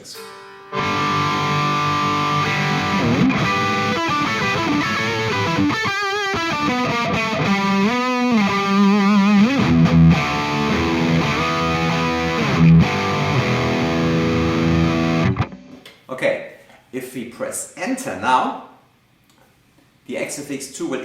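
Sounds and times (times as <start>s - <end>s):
distorted electric guitar: 0.0s - 15.8s.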